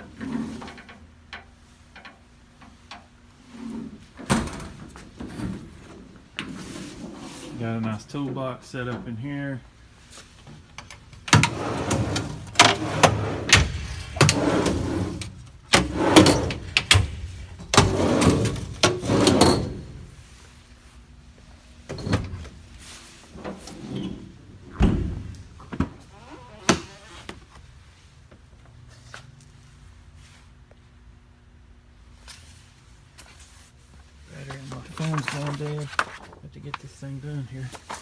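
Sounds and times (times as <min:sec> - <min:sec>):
metal toolbox drawers rattling: 0:11.3 - 0:20.0.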